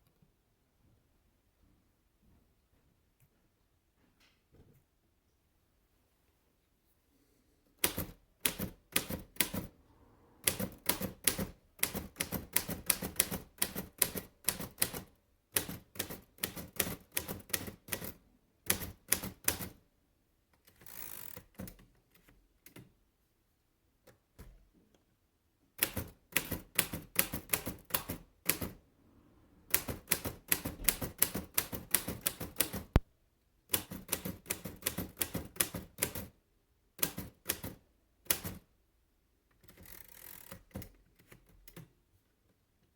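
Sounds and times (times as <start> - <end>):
typewriter rasp: 7.8 - 9.7, 10.4 - 19.8, 25.8 - 28.8, 29.7 - 33.0.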